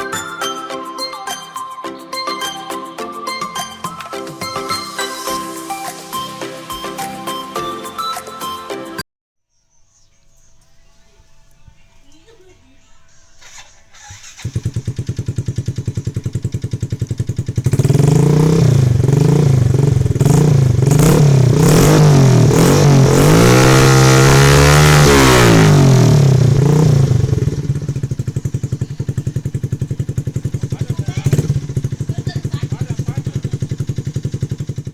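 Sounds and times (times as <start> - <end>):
motorcycle engine idling and revving: 13.4 - 34.9.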